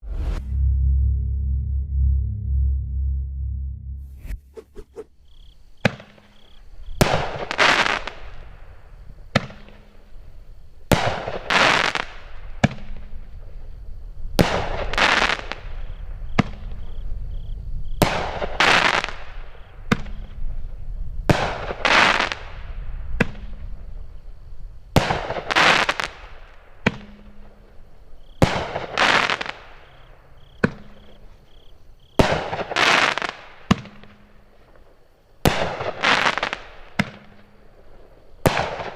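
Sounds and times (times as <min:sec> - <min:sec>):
firework shells bursting and crackling: 0:05.8 - 0:08.6, 0:25.0 - 0:30.0, 0:32.2 - 0:38.9.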